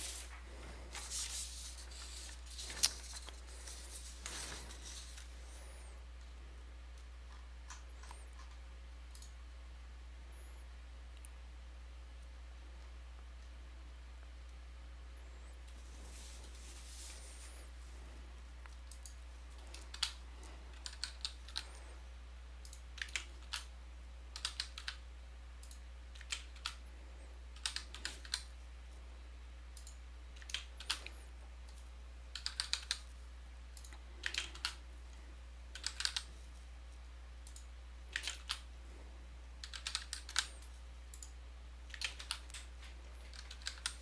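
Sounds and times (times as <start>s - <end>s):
low electrical hum: 0.0s - 44.0s
computer keyboard typing: 18.8s - 21.7s, 22.6s - 23.7s, 24.3s - 25.0s, 25.6s - 26.8s, 27.6s - 28.5s, 29.8s - 31.1s, 31.7s - 33.2s, 33.8s - 34.8s, 35.7s - 36.3s, 37.4s - 38.7s, 39.6s - 44.0s.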